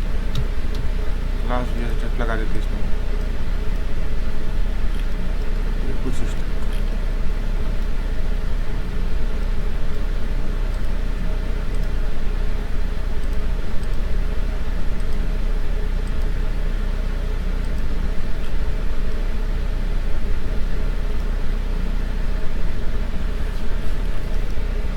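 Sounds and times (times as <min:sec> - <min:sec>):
constant hiss: 0:00.0 - 0:15.4
steady low hum: 0:00.0 - 0:24.9.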